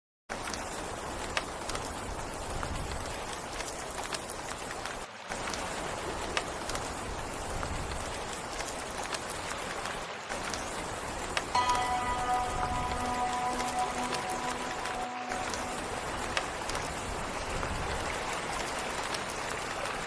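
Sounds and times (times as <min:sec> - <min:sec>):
steady rain falling: 0:00.3 - 0:20.0.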